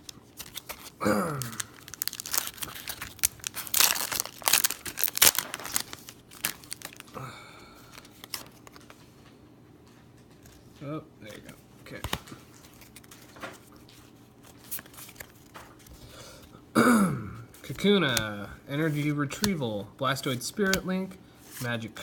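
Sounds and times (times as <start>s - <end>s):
foil wrapper tearing and crinkling: 0.0s - 7.2s.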